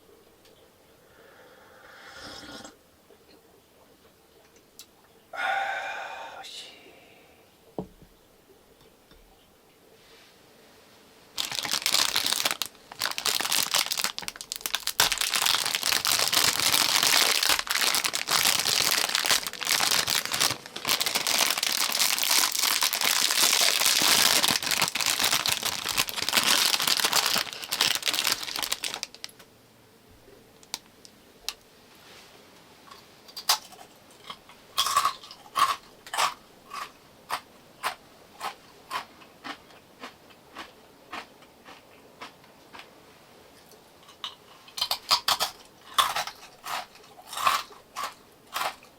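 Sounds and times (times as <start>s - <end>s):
wrapping crumpled and rustled: 11.4s - 29.4s.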